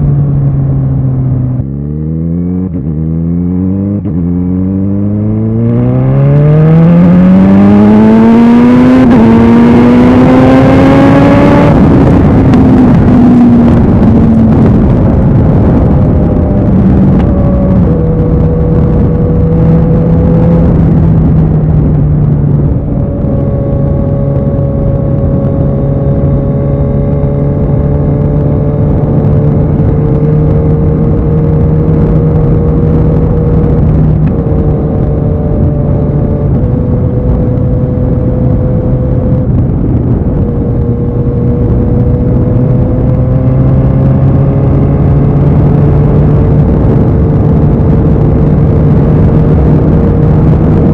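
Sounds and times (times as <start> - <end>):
motorcycle engine running: 0.0 - 50.9.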